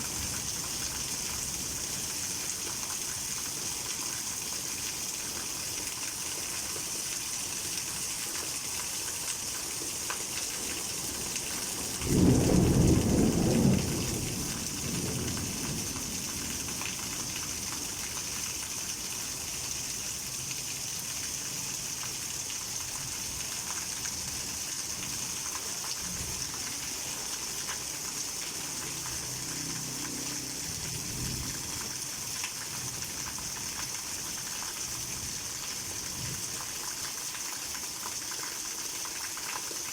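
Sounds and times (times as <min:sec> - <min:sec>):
heavy rain falling: 0:00.0 - 0:39.9
thunder clap and rumble: 0:11.9 - 0:16.8.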